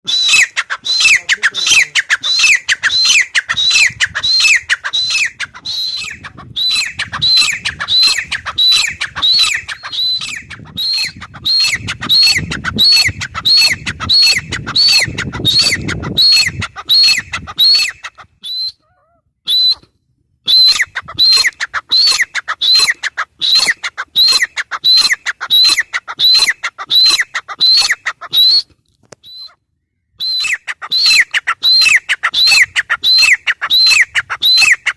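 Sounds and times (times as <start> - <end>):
bird shrill repeated calls: 0.0 - 19.9, 20.5 - 29.6, 30.2 - 34.9.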